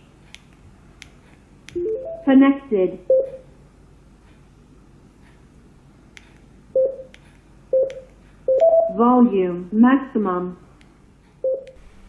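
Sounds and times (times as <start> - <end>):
short electronic beeps: 1.8 - 2.3, 3.1 - 3.4, 6.8 - 7.1, 7.7 - 9.0, 11.4 - 11.8.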